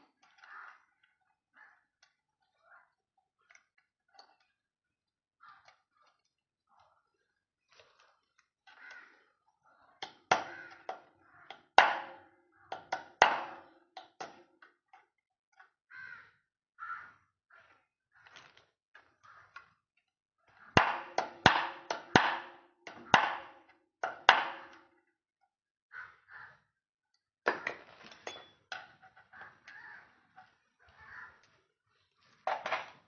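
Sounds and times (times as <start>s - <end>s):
metal tools clinking: 27.6s - 28.8s.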